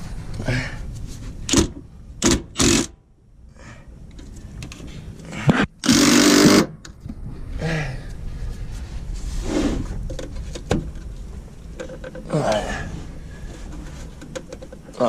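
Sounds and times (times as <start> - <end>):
power tool bursts: 2.2 - 2.9, 5.8 - 6.7.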